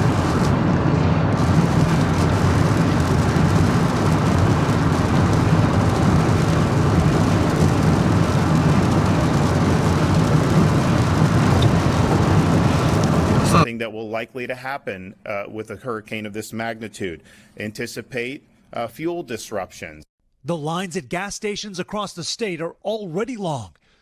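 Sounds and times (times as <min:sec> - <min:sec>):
moving vehicle rumble and hiss: 0:00.0 - 0:13.7.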